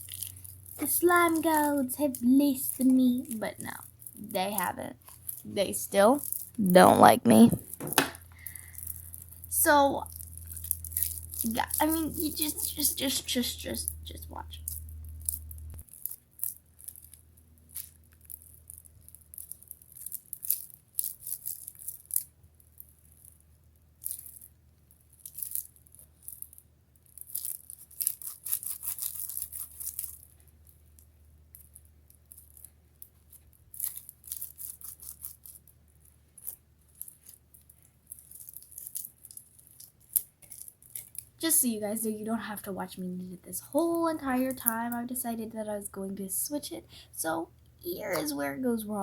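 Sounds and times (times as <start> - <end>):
slime crackling and clicking: 7.3 - 22.3, 27.1 - 30.4, 32.3 - 41.5.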